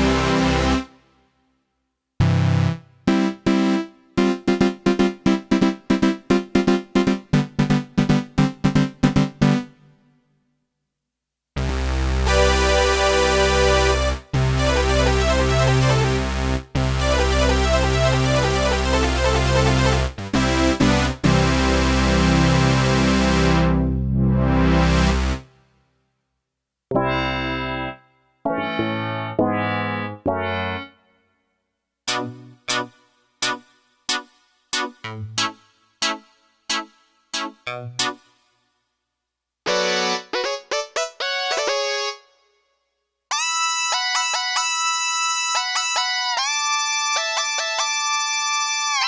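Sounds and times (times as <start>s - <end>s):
synthesizer chords over bass: 0.0s - 0.9s, 2.2s - 9.8s, 11.6s - 25.5s, 26.9s - 30.9s, 32.1s - 32.7s
synthesizer keyboard notes: 0.0s - 0.9s, 2.2s - 9.8s, 11.6s - 25.5s, 26.9s - 31.0s, 32.1s - 38.3s, 39.7s - 42.3s.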